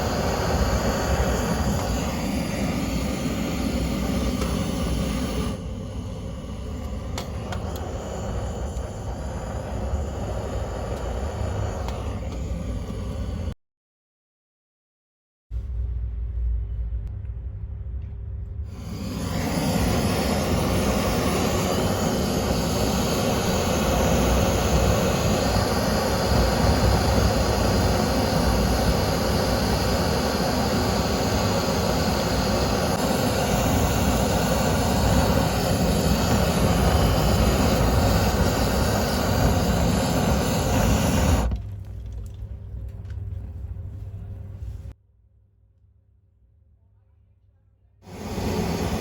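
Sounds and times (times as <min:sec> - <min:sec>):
low fire rumble: 0:00.0 - 0:13.5, 0:15.6 - 0:45.0, 0:48.1 - 0:49.0
fire rushing hiss: 0:00.0 - 0:13.6, 0:18.7 - 0:41.6, 0:48.0 - 0:49.0.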